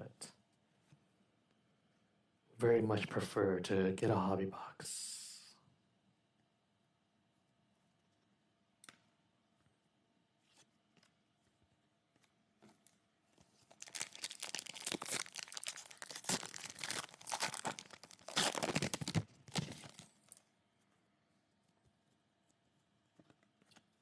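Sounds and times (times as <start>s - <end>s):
card pack wrapper tearing: 13.6s - 20.4s.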